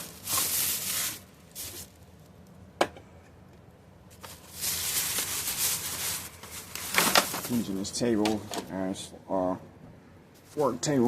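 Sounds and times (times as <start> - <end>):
rustling of purchases: 0.0 - 2.3, 4.1 - 8.8.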